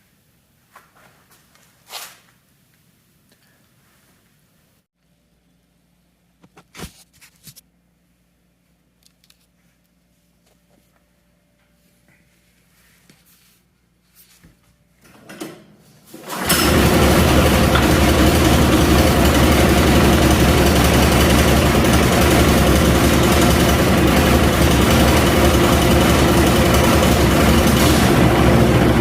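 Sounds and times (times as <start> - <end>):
small gasoline engine running: 16.3 - 29.0.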